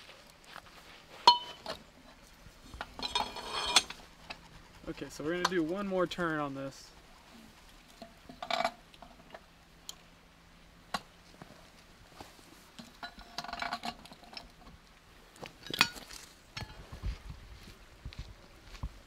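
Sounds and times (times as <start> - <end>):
metal clattering and ringing: 1.3 - 1.8, 2.9 - 4.0.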